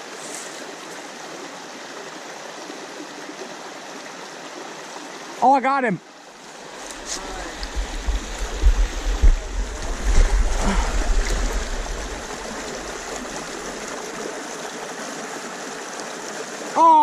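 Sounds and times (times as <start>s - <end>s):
stream rushing over rocks: 0.0s - 5.4s, 6.0s - 17.0s
low rumbling bumps: 6.8s - 14.0s.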